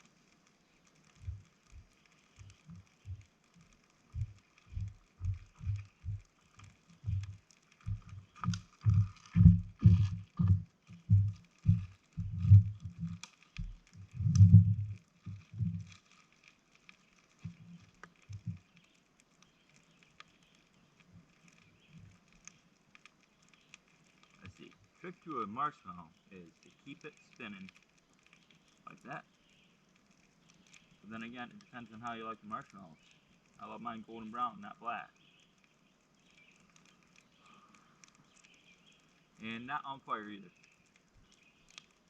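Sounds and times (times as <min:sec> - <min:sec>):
footsteps on forest floor: 0:04.1 - 0:16.0.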